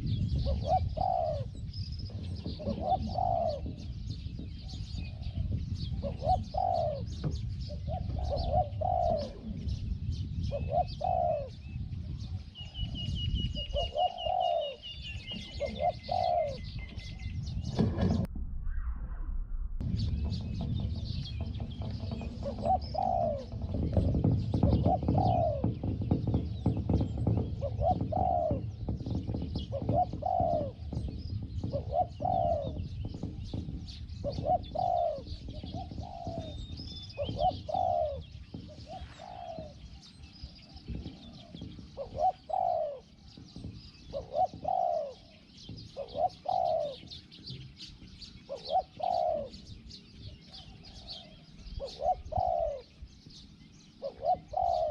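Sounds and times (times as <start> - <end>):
dove cooing: 0.0 - 18.3, 19.8 - 54.9
small birds chirping: 0.0 - 18.3, 19.8 - 54.9
low rumble: 16.7 - 24.7.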